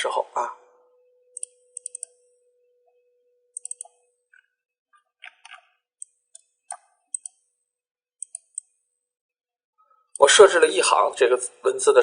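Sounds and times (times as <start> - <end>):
computer mouse clicking: 1.4 - 2.3, 3.6 - 4.4, 5.2 - 7.5, 8.2 - 8.8.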